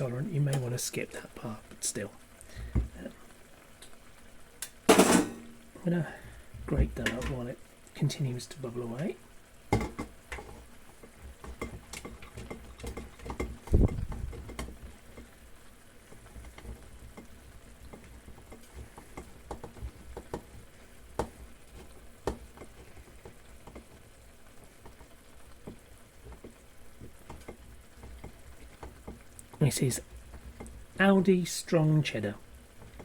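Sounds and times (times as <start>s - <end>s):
omelette sizzling in a frying pan: 0.0s - 33.0s.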